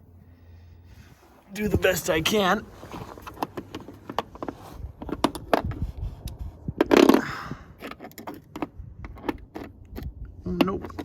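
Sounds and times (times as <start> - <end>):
rustling scrape: 0.9 - 6.7
wrench clicking and scraping: 7.8 - 11.0.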